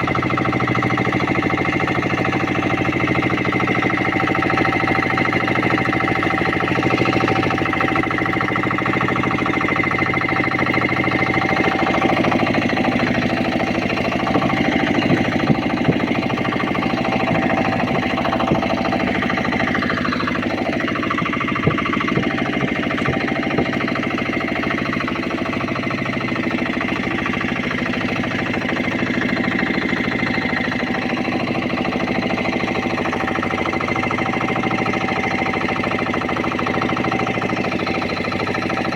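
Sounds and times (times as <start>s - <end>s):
boat engine chugging: 0.0s - 38.9s
sharp knocks: 14.3s - 24.5s.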